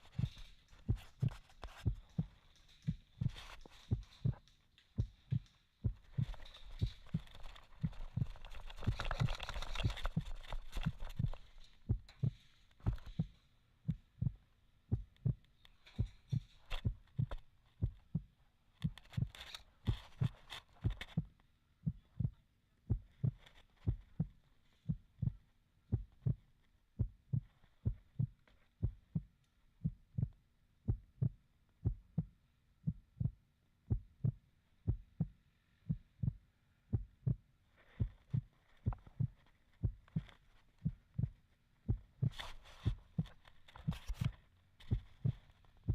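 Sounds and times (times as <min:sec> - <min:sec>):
rustling: 0:00.0 - 0:13.6, 0:37.7 - 0:45.9
low dull thuds: 0:00.1 - 0:09.0, 0:09.9 - 0:26.4, 0:27.0 - 0:45.9.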